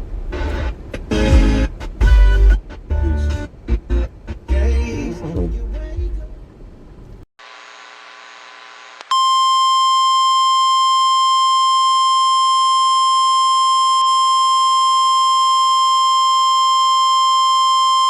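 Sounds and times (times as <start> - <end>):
loud steady alarm beep: 9.1 - 18.0.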